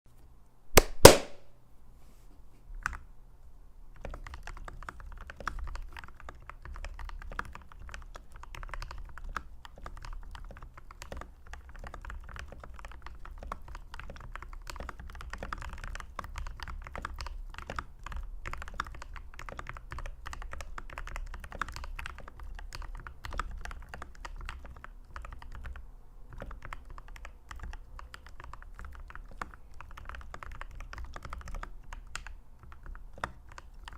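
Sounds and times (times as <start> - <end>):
mechanical keyboard typing: 4.0 - 33.9.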